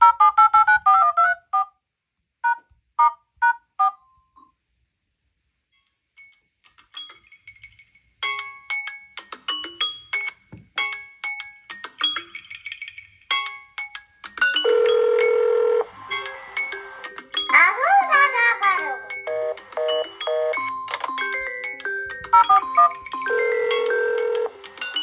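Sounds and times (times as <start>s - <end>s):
faint ringtone melody: 5.8s - 25.0s
loud bright ringtone: 14.2s - 25.0s
phone ringtone short notes: 22.4s - 24.6s.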